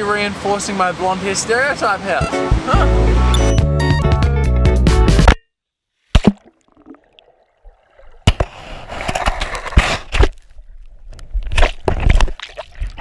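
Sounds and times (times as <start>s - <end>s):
sea water sloshing and splashing: 6.2s - 13.0s.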